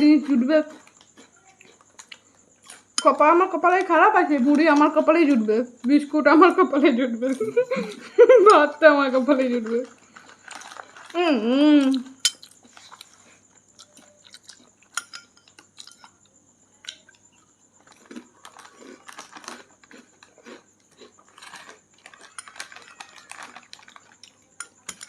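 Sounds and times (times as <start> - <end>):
crunchy chewing: 0.2 - 3.1, 9.1 - 11.2, 11.8 - 25.0
spoons clinking on plates: 14.9 - 16.2, 24.6 - 25.0.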